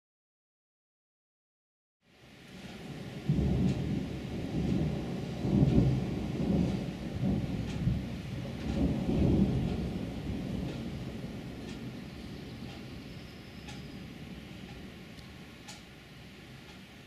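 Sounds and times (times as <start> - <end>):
rain hiss: 2.0 - 17.0
thunder rumbling: 2.3 - 17.0.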